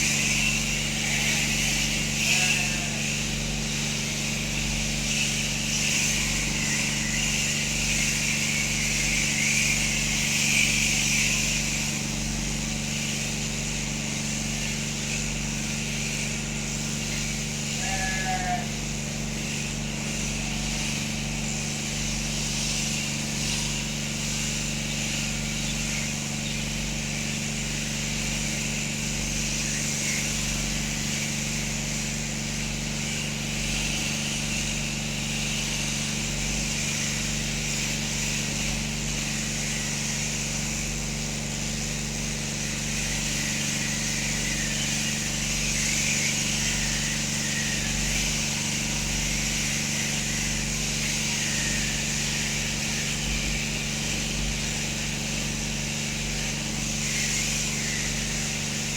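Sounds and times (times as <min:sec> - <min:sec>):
machine humming and hissing: 0:00.0 - 0:58.9
sheep bleating: 0:01.0 - 0:03.3, 0:17.7 - 0:18.8.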